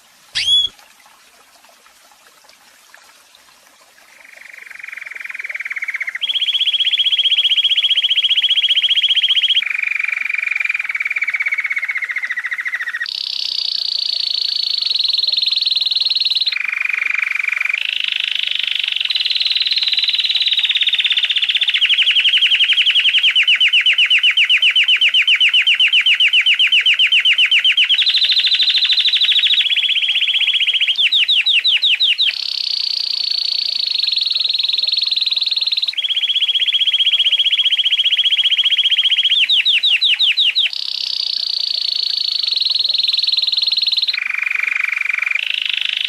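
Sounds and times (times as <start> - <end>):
canary trilling song: 0.4 - 0.7, 21.4 - 32.4, 35.9 - 40.8.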